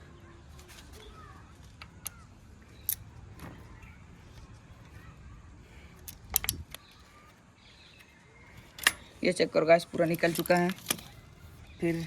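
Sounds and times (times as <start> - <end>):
small metallic clicks and clinks: 1.7 - 2.2, 2.8 - 3.9, 5.9 - 6.9, 8.0 - 9.3, 9.9 - 11.2.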